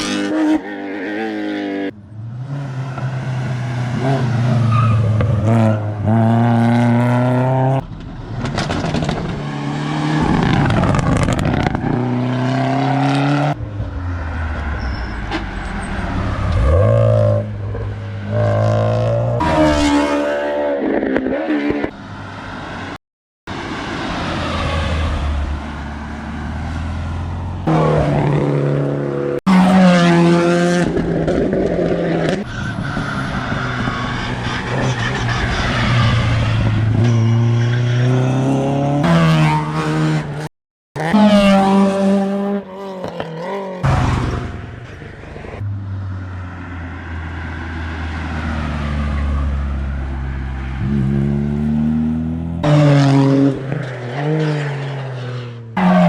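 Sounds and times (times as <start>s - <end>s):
rally car engines revving: 0.0s - 14.0s, 27.6s - 45.7s, 50.2s - 56.0s
tyre noise and squeal: 4.0s - 5.9s, 14.2s - 18.7s, 32.2s - 39.2s.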